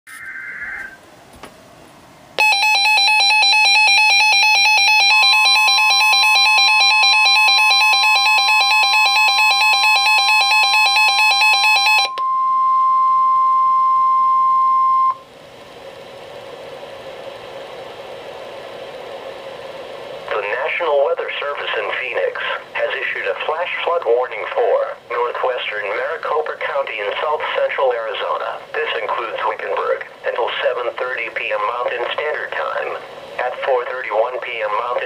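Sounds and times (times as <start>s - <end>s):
fast pulsing alarm beeps: 2.4s - 12.2s
steady alarm tone: 2.4s - 15.3s
radio hiss: 15.9s - 35.0s.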